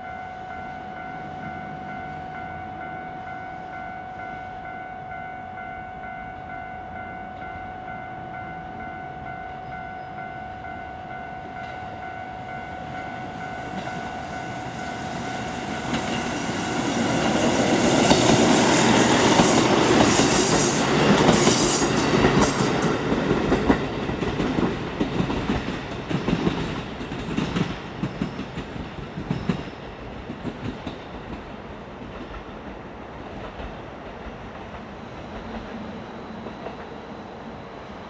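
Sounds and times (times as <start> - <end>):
train wheels clattering: 13.6 - 35.8.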